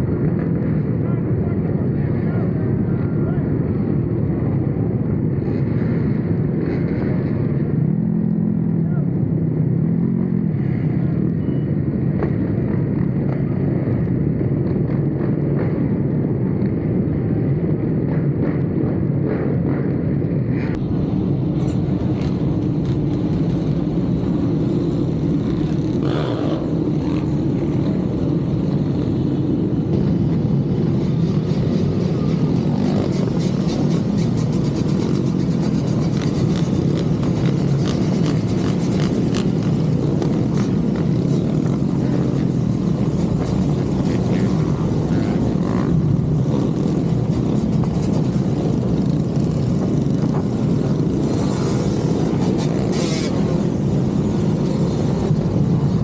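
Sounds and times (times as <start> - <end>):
motorcycle engine at speed: 0.0 - 56.0
road and wind noise: 0.0 - 56.0.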